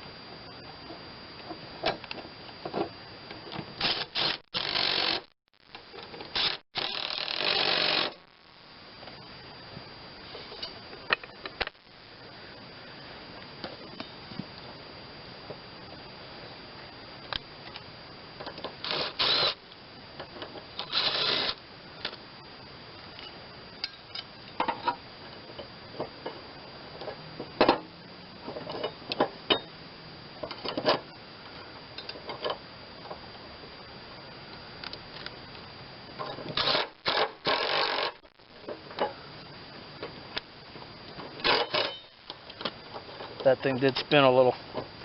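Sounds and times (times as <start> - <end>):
ratchet wrench rasping: 3.8 - 5.3, 6.3 - 8.3, 18.8 - 19.6.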